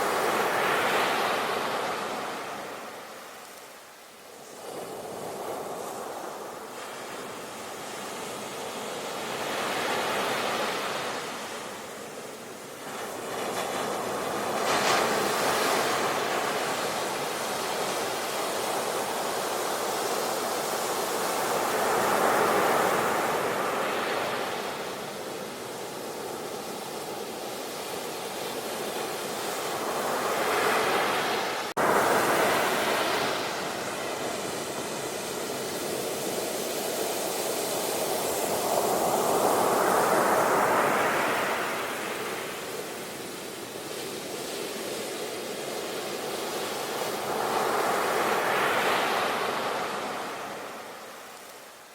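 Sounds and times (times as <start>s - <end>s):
ocean waves breaking on beach: 0.0s - 51.9s.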